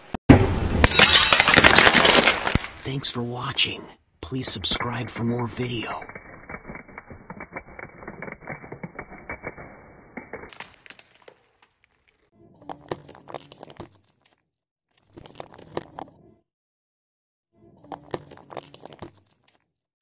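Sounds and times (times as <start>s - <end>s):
objects crackling as crushed: 0.9s - 3.0s, 4.8s - 16.0s.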